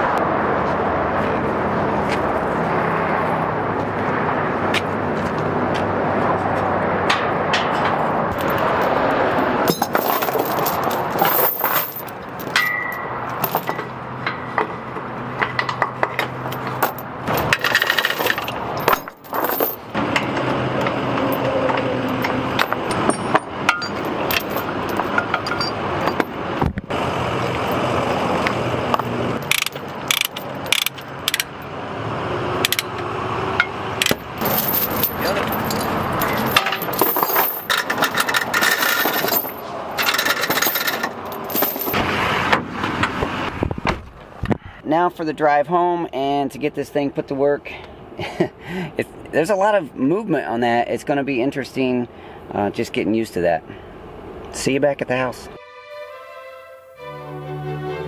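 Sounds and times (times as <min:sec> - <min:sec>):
sharp metallic clanks: 0:07.0 - 0:08.9, 0:09.6 - 0:14.8, 0:15.4 - 0:26.4, 0:29.4 - 0:31.6, 0:33.6 - 0:42.0
diesel engine running: 0:19.8 - 0:41.4.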